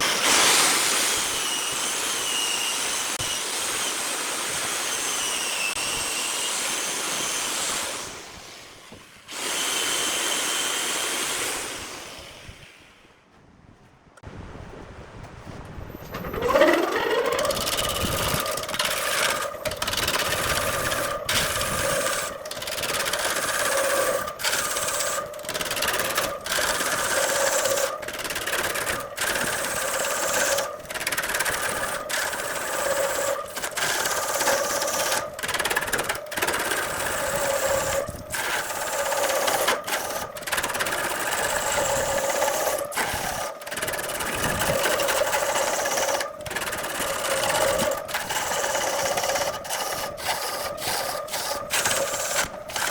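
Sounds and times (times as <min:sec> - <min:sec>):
power tool motor running: 0:00.0 - 0:12.9, 0:16.1 - 0:52.9
rasping on wood: 0:16.2 - 0:52.9.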